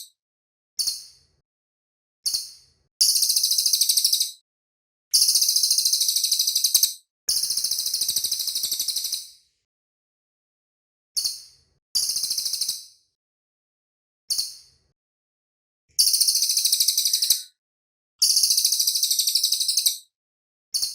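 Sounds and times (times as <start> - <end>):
bird trilling: 16.0 - 17.5.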